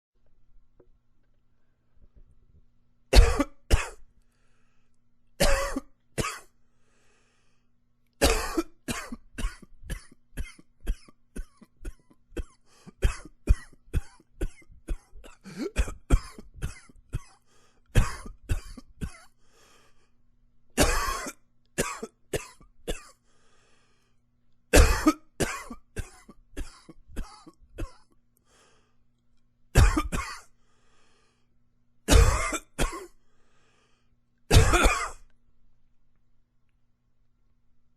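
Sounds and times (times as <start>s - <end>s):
man coughing: 3.1s - 4.0s, 5.4s - 6.5s, 8.2s - 17.4s, 18.0s - 19.3s, 20.8s - 23.2s, 24.8s - 28.1s, 29.8s - 30.5s, 32.1s - 33.2s, 34.5s - 35.2s.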